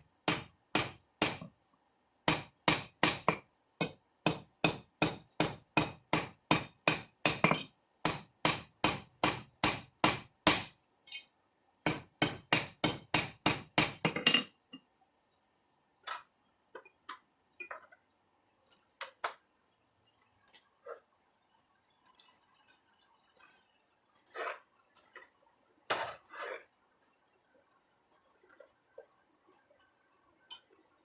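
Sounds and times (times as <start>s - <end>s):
hammer striking steel: 0.3s - 1.5s, 2.3s - 11.3s, 11.9s - 14.4s
faint metal clinks: 11.0s - 11.4s.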